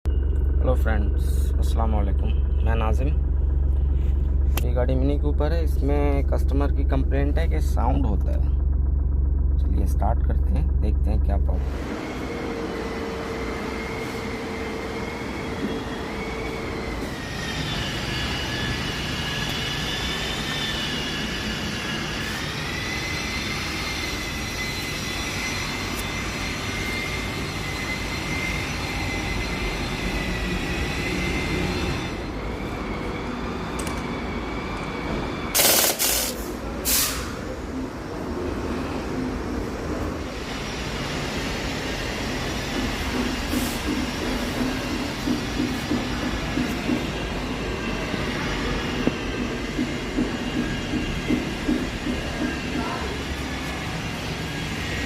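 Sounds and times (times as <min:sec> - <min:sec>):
diesel engine running: 0:00.0 - 0:55.0
high-pitched whine: 0:00.1 - 0:55.0
short loud noise bursts: 0:35.5 - 0:37.4.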